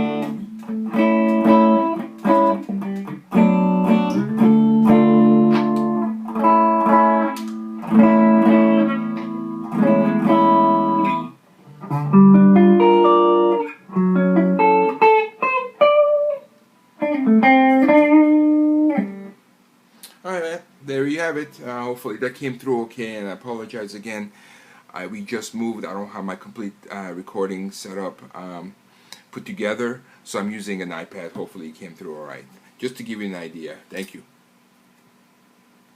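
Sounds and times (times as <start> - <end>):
electric guitar chords strummed: 0.0 - 19.4.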